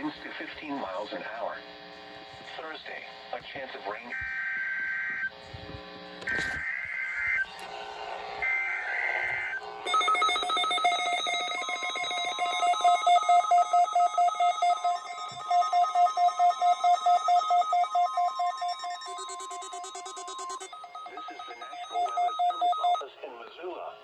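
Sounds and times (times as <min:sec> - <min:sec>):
pulsing ringing alarm: 0:06.3 - 0:23.0
steady warning alarm tone: 0:06.3 - 0:23.0
screeching digital data bursts: 0:08.4 - 0:23.0.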